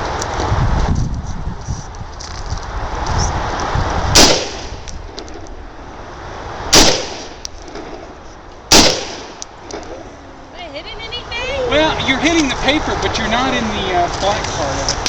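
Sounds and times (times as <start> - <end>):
rifle shots with echo: 4.2 - 4.8, 6.7 - 7.9, 8.7 - 9.8.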